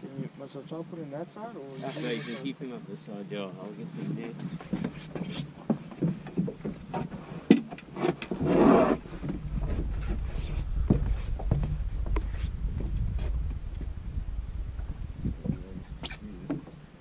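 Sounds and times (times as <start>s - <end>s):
wind buffeting microphone: 8.3s - 17.0s.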